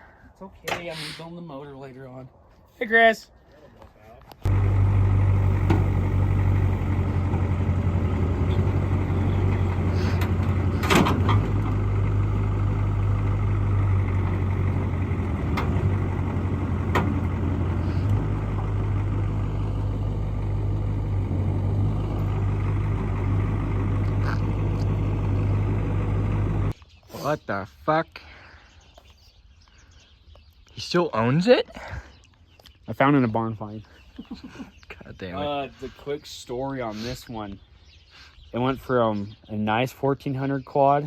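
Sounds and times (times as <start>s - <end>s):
vehicle engine running: 4.5s - 26.8s.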